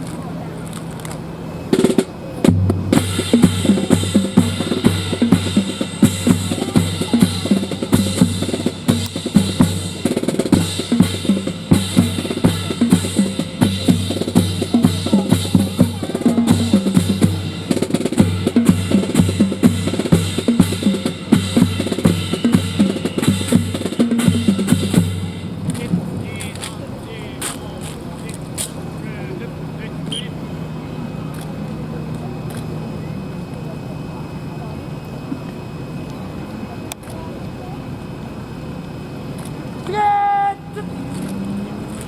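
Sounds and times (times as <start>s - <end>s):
drum-led music: 1.7s - 33.4s.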